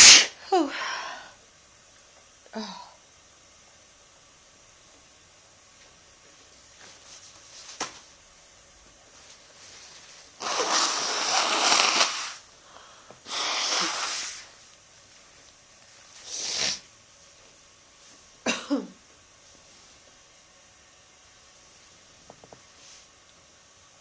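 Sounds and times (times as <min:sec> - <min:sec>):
person sneezing: 0:00.0 - 0:00.8, 0:13.3 - 0:14.5.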